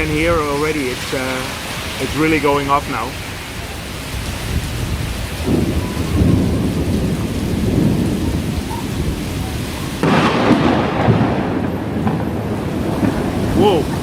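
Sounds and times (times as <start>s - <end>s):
rolling thunder: 0.0s - 2.5s, 3.2s - 14.0s
heavy rain downpour: 0.0s - 14.0s.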